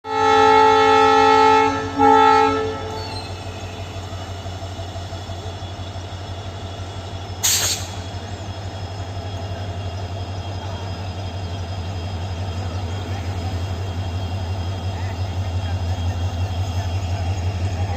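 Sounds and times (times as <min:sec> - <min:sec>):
locomotive horn blasts: 0:00.0 - 0:03.4
diesel engine humming: 0:00.1 - 0:17.9
short sharp hiss: 0:07.4 - 0:08.1.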